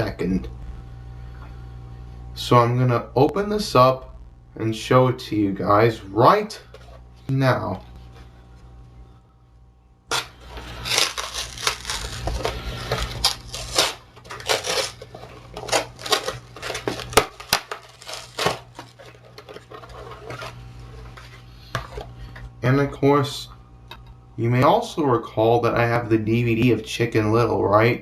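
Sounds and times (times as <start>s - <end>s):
packaging tearing and crinkling: 10.1s - 20.6s.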